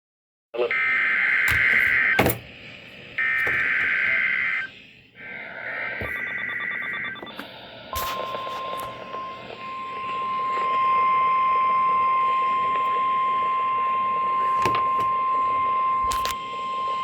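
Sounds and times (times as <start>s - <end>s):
steady single-pitch alert tone: 5.7s - 17.0s.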